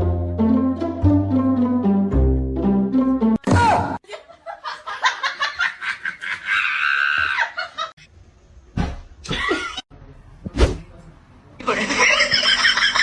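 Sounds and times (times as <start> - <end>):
person laughing and squealing: 5.8 - 8.0.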